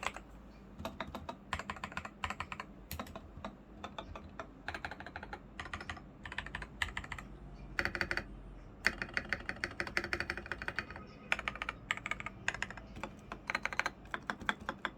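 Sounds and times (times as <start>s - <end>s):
mechanical keyboard key clacks: 7.8s - 14.9s.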